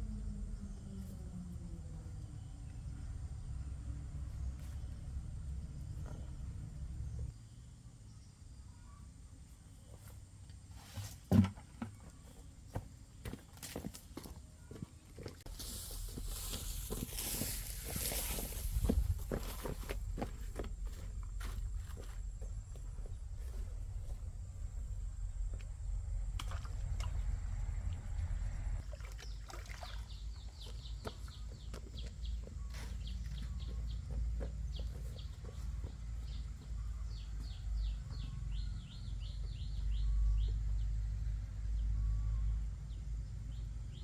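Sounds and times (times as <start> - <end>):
steady low rumble: 15.5 - 29.5
birds chirping: 16.0 - 44.0.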